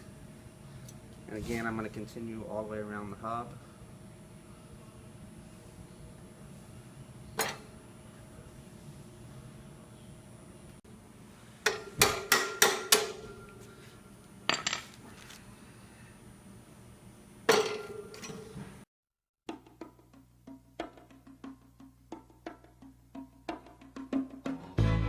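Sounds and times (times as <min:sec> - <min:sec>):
background music with wood-block: 0:19.5 - 0:25.0.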